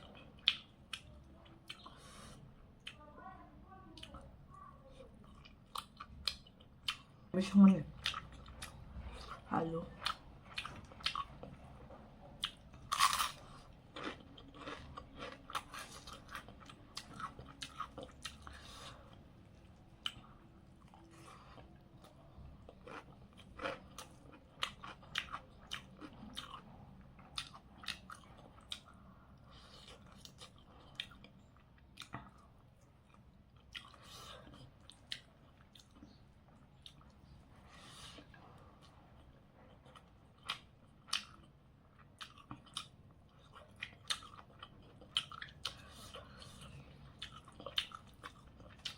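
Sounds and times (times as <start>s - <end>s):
person chewing crunchy food: 0.0s - 3.0s, 10.0s - 48.9s.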